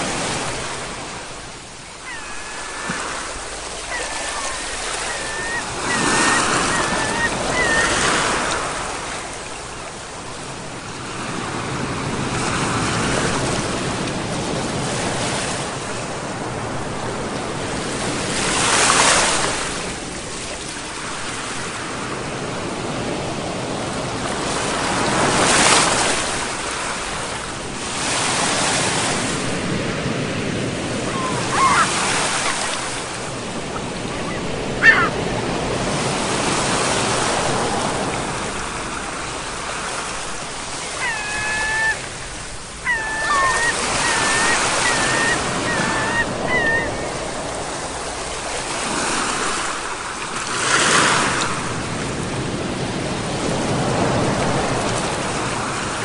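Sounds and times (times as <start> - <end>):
ocean waves breaking: 0.0 - 56.0
short high calls: 2.0 - 8.7, 31.1 - 32.0, 40.9 - 42.2, 42.8 - 47.1.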